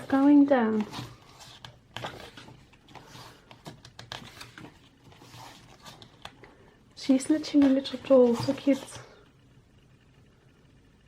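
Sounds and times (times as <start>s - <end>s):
paper rustling and tapping: 0.0s - 6.4s, 7.3s - 9.1s.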